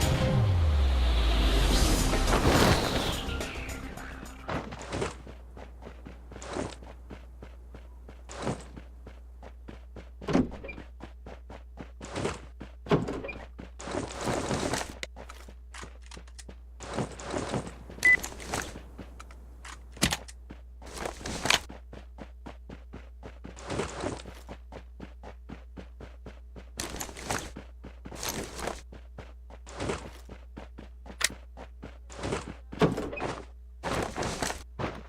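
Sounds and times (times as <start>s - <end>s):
steady low hum: 3.3s - 13.8s.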